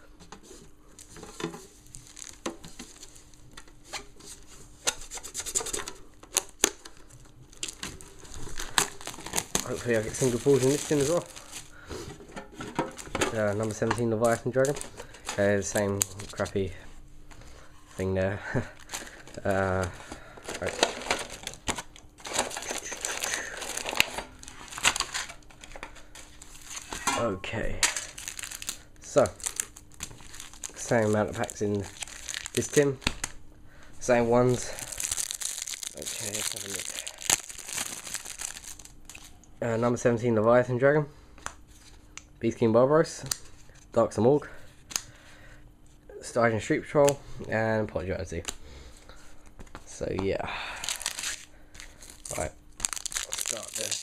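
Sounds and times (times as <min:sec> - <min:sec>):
plastic and foil wrappers crinkling: 0:00.9 - 0:11.9, 0:12.6 - 0:17.5, 0:18.4 - 0:33.4, 0:34.0 - 0:39.5, 0:50.6 - 0:54.0
metal lid scraping plastic wrap: 0:07.6 - 0:14.0.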